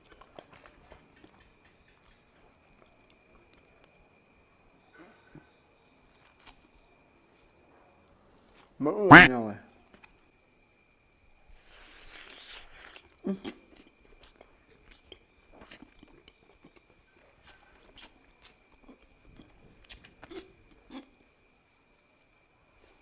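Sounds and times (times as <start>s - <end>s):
wet chewing and biting: 0.0s - 4.0s, 6.1s - 6.8s, 11.1s - 21.1s
noise hiss: 2.1s - 15.9s.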